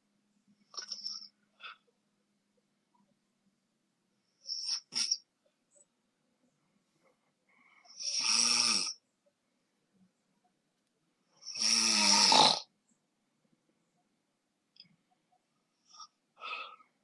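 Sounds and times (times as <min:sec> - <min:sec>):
person snoring: 0:07.9 - 0:09.0, 0:11.4 - 0:12.7.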